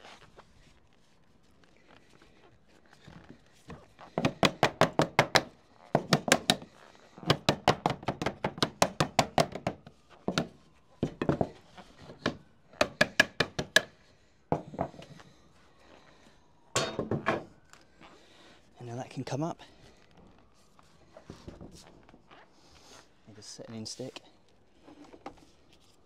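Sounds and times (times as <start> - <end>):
hand tool tapping sheet lead: 12.2 - 13.9.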